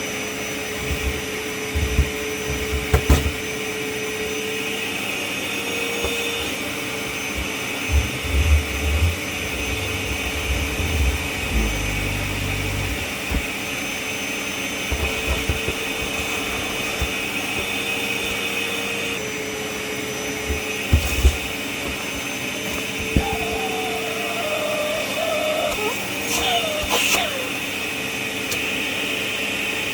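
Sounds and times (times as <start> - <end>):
wet dry vacuum cleaner whine: 0.0 - 29.9
low knocks and thuds: 7.9 - 13.5.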